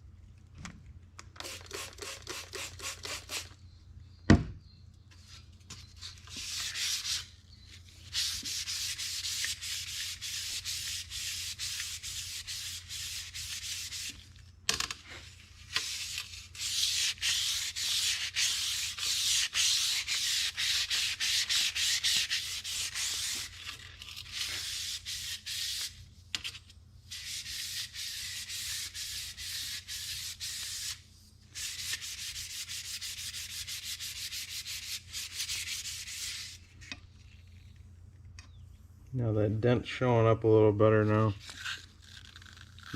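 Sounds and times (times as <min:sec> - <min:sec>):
sandpaper rasping on metal: 0:01.4 - 0:03.5, 0:06.3 - 0:07.4, 0:08.0 - 0:14.2, 0:15.7 - 0:26.0, 0:27.1 - 0:36.6.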